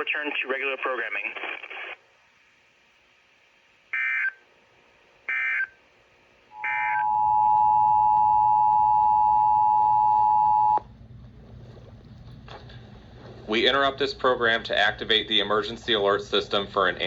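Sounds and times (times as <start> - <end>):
data tone bursts: 6.6 - 10.8
two-tone attention signal: 6.6 - 10.8.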